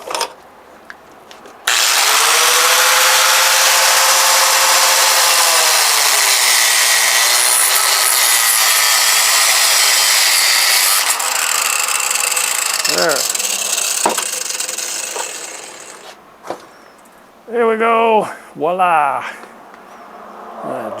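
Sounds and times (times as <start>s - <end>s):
angle grinder cutting metal: 1.7s - 16.2s.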